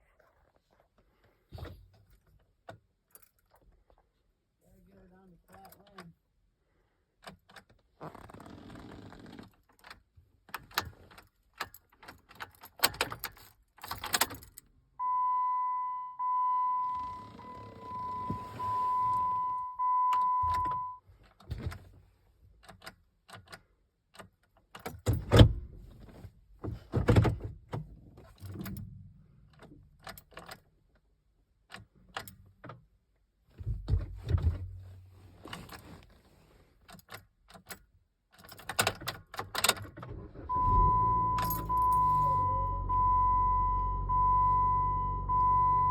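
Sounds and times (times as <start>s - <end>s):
keys jangling and clicking: 11.6s - 14.6s
car electronic warning chime: 15.0s - 21.0s, 40.3s - 45.9s.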